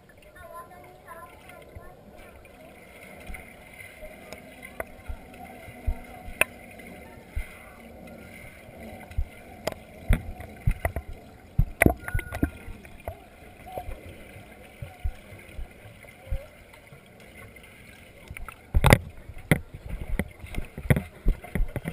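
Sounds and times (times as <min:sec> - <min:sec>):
rushing water: 0:00.0 - 0:21.9
knocks and clicks: 0:09.1 - 0:14.0, 0:18.3 - 0:21.9.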